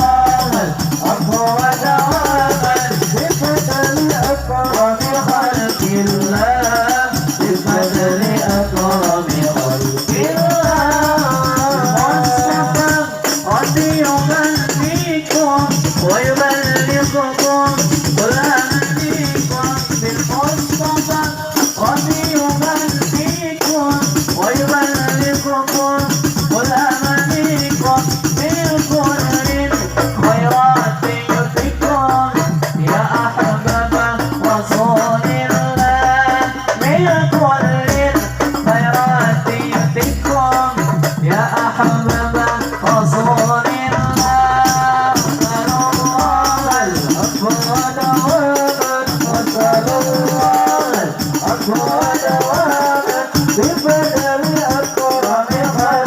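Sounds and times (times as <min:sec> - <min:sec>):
deep bass drum beats: 0:00.0 - 0:52.7
frame drums: 0:00.0 - 0:56.0
jingling rattles: 0:44.5 - 0:56.0.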